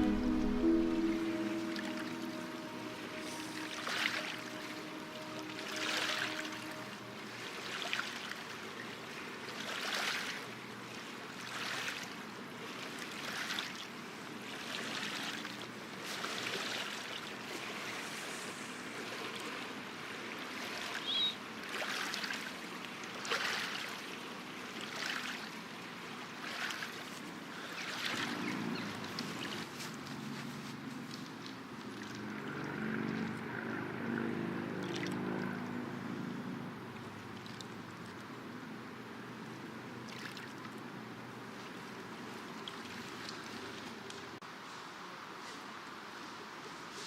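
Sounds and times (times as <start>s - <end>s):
small waves washing onto shore: 0.0s - 33.3s.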